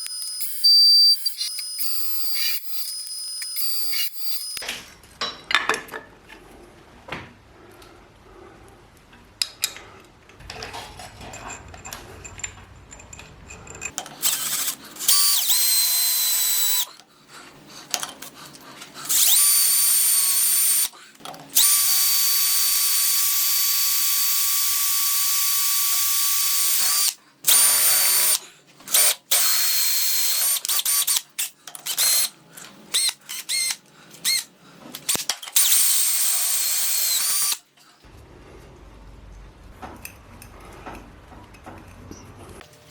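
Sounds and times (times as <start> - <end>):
power drill motor whining: 0.0 - 4.6, 14.2 - 16.9, 19.0 - 20.9, 21.6 - 28.4, 35.6 - 37.6.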